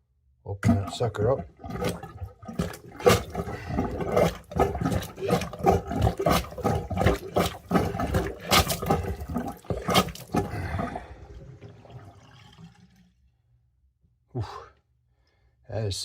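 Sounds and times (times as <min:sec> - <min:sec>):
plunger sloshing water in sink: 0:00.6 - 0:13.1.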